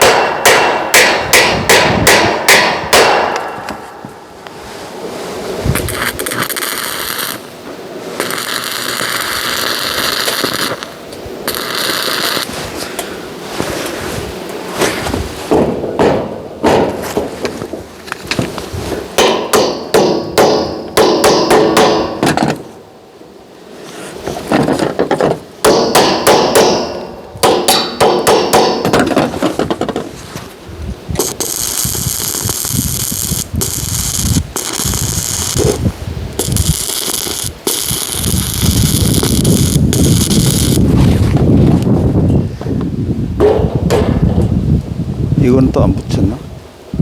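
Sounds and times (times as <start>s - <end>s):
hammer blows on metal: 0.0s - 4.2s, 19.2s - 22.6s, 25.6s - 29.3s
arc welder crackling hiss: 3.7s - 15.5s, 30.3s - 41.0s.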